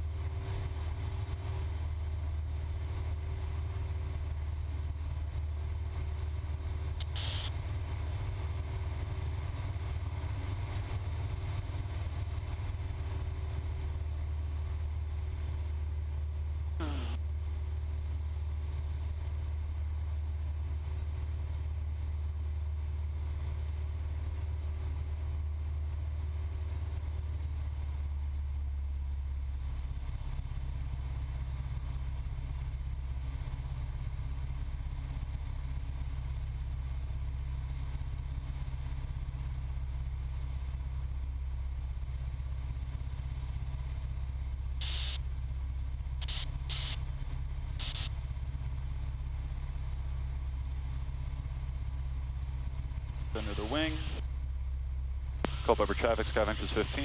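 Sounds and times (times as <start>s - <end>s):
plane engine and propeller droning: 0.0s - 57.0s
short clicks: 7.0s - 7.5s, 46.2s - 47.0s, 47.8s - 48.1s.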